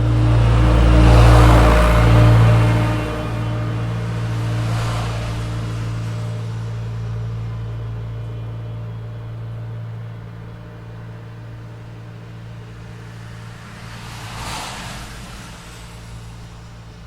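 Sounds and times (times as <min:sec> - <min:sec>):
cars passing: 0:00.0 - 0:17.0
vehicle engine idling: 0:00.0 - 0:17.0.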